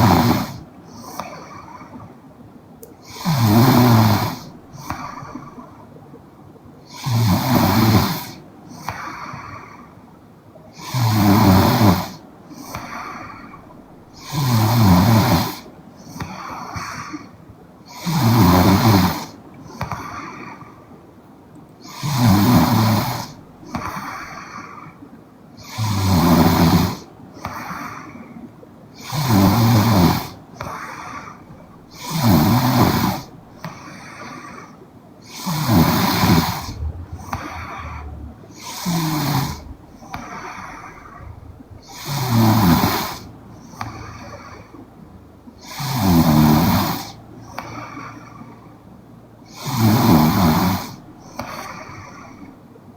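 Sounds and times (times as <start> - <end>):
woman snoring: 0.0 - 1.2, 3.0 - 5.4, 6.9 - 9.1, 10.8 - 13.5, 14.2 - 15.7, 17.9 - 19.4, 21.8 - 23.9, 25.6 - 27.1, 29.0 - 30.4, 31.9 - 33.8, 35.2 - 44.6, 45.6 - 47.2, 49.5 - 51.0
soft breathing: 2.9 - 6.1, 26.9 - 29.2, 30.2 - 45.6, 47.0 - 49.0, 50.9 - 52.6.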